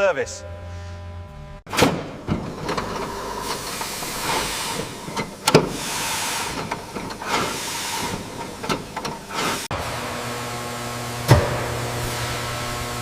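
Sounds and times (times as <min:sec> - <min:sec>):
steam hissing: 0:03.0 - 0:09.8.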